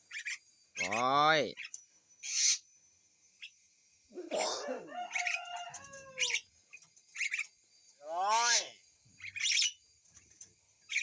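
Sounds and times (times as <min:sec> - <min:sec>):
myna bird calling: 0:00.0 - 0:02.7, 0:03.4 - 0:09.8
hissing squawk: 0:02.2 - 0:02.6.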